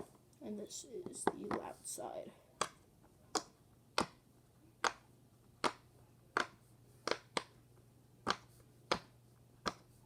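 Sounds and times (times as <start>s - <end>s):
fidget toy popping: 2.6s - 4.2s, 5.6s - 7.6s.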